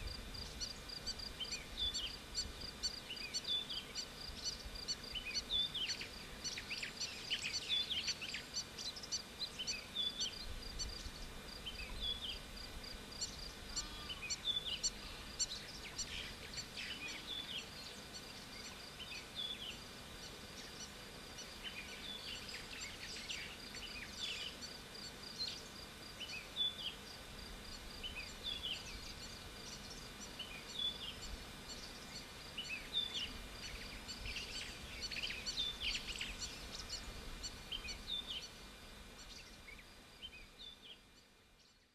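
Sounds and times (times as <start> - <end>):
birds chirping and calling: 28.0 - 38.6.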